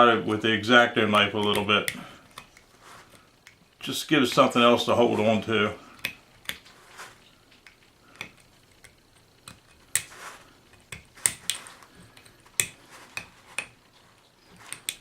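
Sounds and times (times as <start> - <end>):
knife scraping plastic hub: 5.1 - 15.0.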